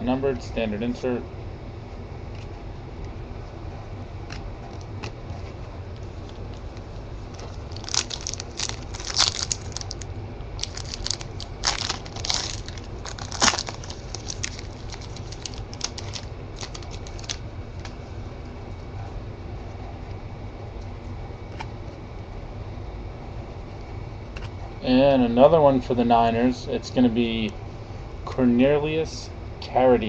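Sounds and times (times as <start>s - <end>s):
steady low hum: 0.0s - 30.0s
crinkling of pack wrappers: 7.3s - 17.9s.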